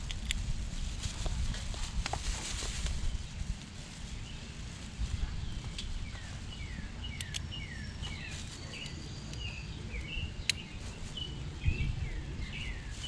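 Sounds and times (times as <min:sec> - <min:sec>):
small birds chirping: 0:01.7 - 0:13.0
sharp clicks: 0:07.2 - 0:07.5.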